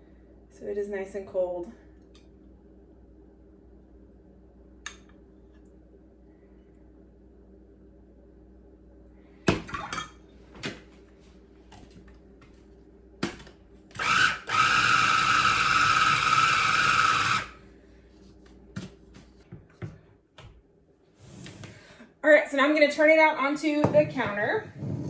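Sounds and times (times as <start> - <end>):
food processor whirring: 13.9 - 17.6.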